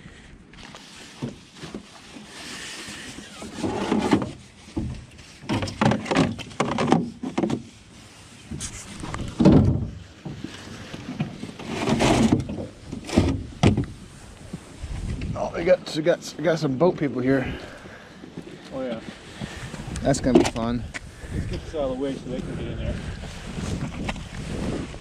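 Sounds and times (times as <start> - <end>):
gear clattering in a boat: 3.1 - 7.7, 8.4 - 14.0.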